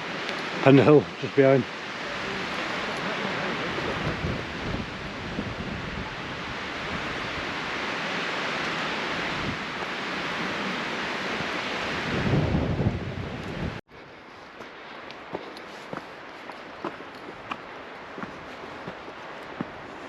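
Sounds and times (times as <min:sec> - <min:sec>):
rush of wind: 0:00.0 - 0:20.0
wind buffeting microphone: 0:02.1 - 0:08.2, 0:08.8 - 0:13.8.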